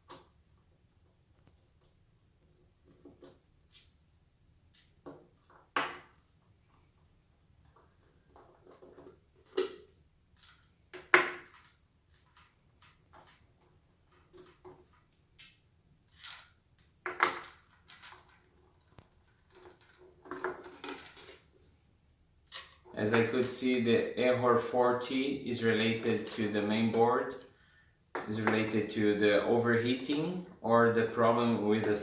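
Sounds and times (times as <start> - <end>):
tools and parts clicking and rattling: 7.7 - 21.6.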